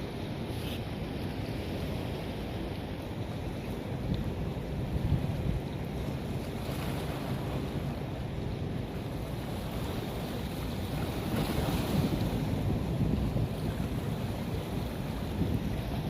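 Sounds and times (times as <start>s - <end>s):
wind buffeting microphone: 3.6s - 16.0s.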